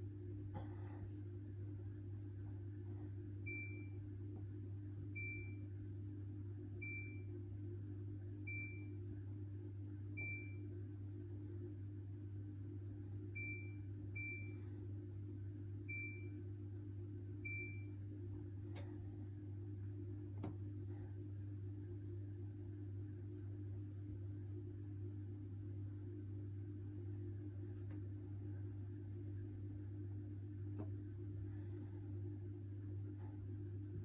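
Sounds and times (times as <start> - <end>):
steady low hum: 0.0 - 34.0
washing machine panel beeps: 3.4 - 4.0, 5.1 - 5.7, 6.8 - 7.4, 8.4 - 9.0, 10.2 - 10.7, 13.3 - 14.7, 15.9 - 16.4, 17.4 - 18.0.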